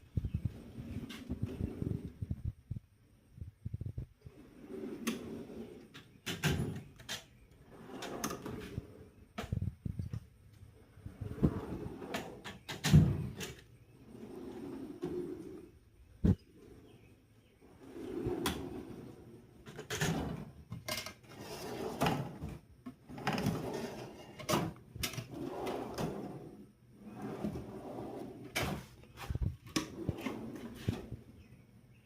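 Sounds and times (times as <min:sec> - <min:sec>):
metal drawers rolling on slides: 0:04.3 - 0:09.1, 0:11.0 - 0:15.7, 0:17.6 - 0:31.3.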